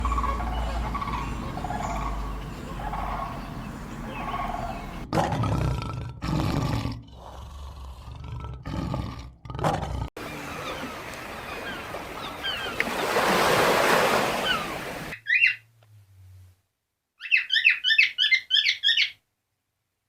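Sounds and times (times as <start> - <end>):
dogs and puppies vocalising: 0.0 - 5.2, 17.2 - 19.2.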